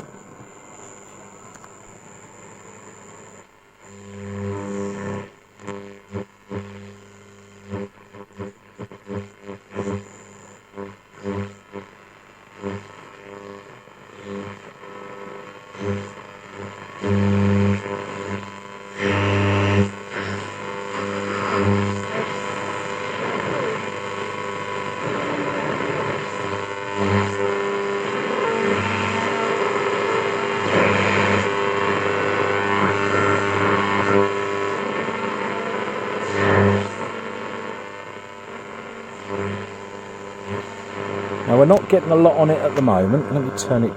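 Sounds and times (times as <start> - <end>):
faint noisy broadcast sound: 0.0 - 43.9
radio mains hum: 0.0 - 43.9.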